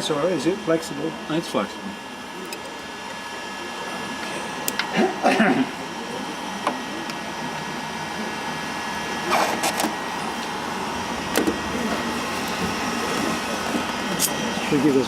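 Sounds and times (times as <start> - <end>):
small electric motor whirring: 9.6 - 15.0.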